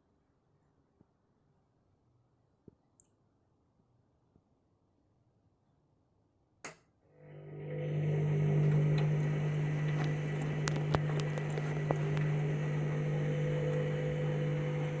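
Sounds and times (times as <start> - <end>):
washing machine motor humming: 7.1 - 15.0.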